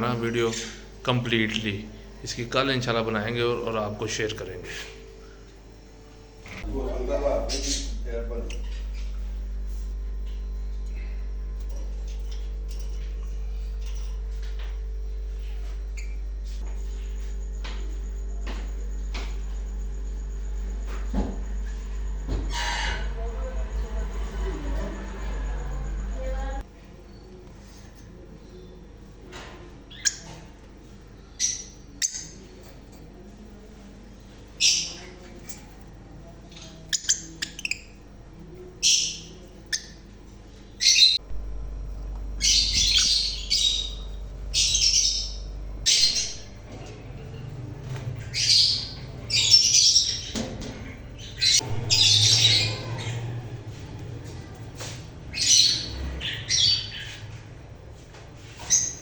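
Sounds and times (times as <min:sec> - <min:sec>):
parrots squawking: 0:40.8 - 0:41.2, 0:42.4 - 0:46.6, 0:48.2 - 0:50.4, 0:51.2 - 0:53.6, 0:55.3 - 0:57.3.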